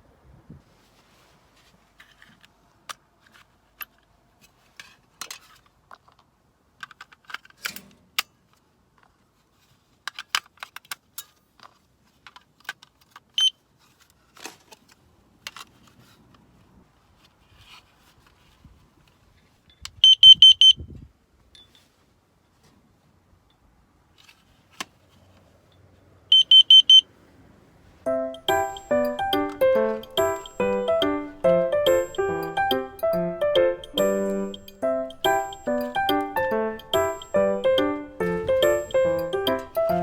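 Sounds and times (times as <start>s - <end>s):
gear handling clicks and knocks: 2.0s - 16.4s.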